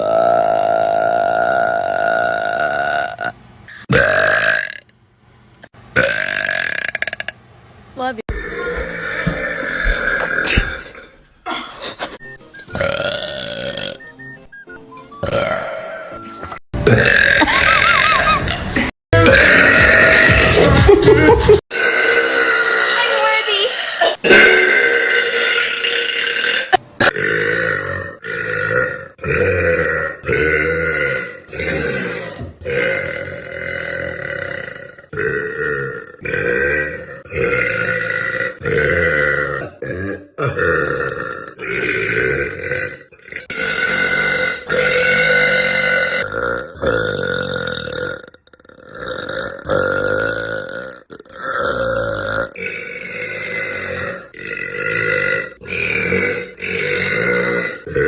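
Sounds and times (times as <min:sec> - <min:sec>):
girl burping loudly: 0:00.0 - 0:04.9, 0:15.2 - 0:15.9, 0:16.8 - 0:20.9, 0:21.7 - 0:58.0.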